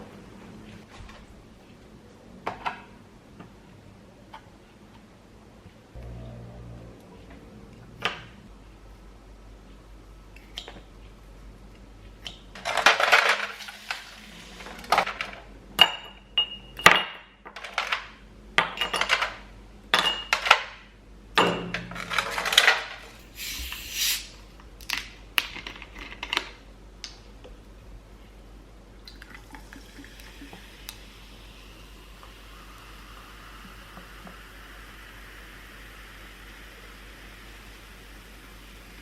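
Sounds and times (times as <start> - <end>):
dishes and utensils clattering: 21.4 - 23.2.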